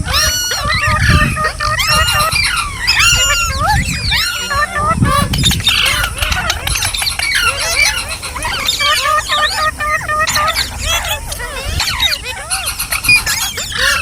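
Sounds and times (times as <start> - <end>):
parrot chirping and squealing: 0.0 - 14.0.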